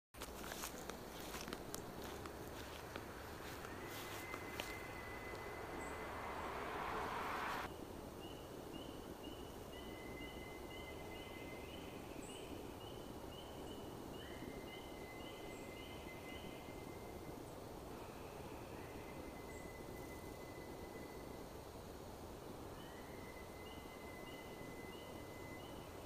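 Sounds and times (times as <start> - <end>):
short rush of noise: 2.8 - 7.7
thin steady high whistle: 3.3 - 7.7.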